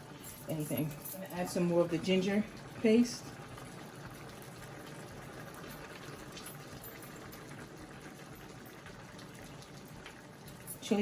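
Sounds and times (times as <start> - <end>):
sauce bubbling in a pan: 1.4 - 10.7.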